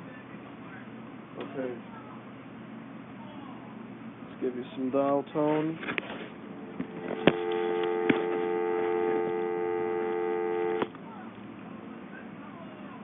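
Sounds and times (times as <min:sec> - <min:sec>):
telephone dial tone: 0:06.7 - 0:10.9.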